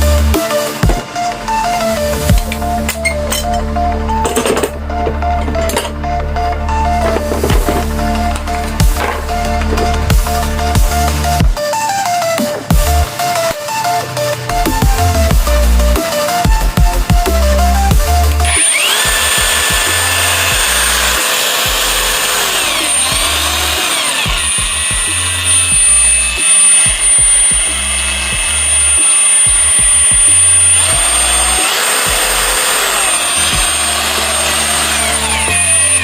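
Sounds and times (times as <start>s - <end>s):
electronic music with bass beat: 0.0s - 36.0s
power tool motor whining: 0.0s - 36.0s.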